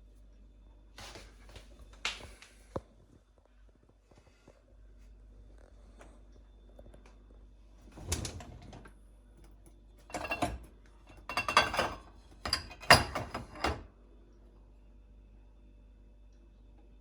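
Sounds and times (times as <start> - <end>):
dishes and cutlery clattering: 10.1 - 13.9.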